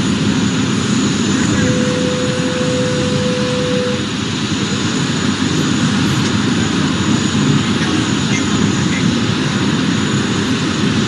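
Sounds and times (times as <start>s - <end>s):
jet engine rush: 0.0s - 11.0s
steady tone: 1.3s - 4.4s.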